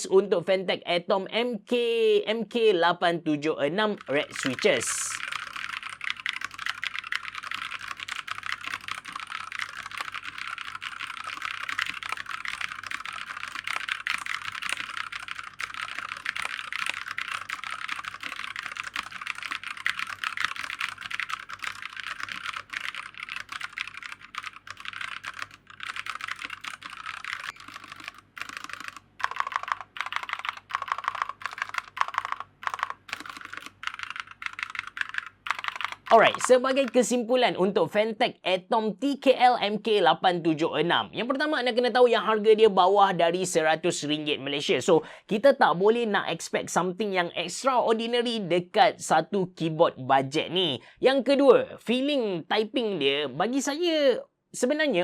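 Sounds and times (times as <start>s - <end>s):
fast mechanical keyboard typing: 3.8s - 37.2s.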